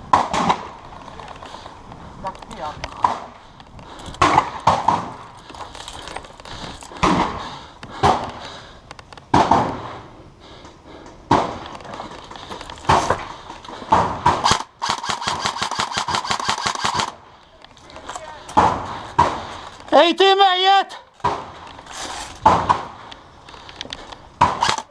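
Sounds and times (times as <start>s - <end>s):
airsoft full-auto burst: 14.4s - 17.2s, 24.5s - 24.9s.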